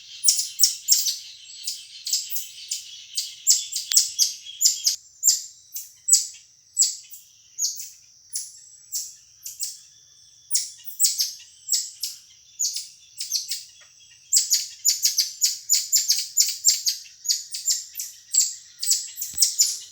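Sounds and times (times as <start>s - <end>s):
marmoset high-pitched chirps: 3.5s - 5.4s, 10.5s - 13.6s, 14.3s - 19.9s.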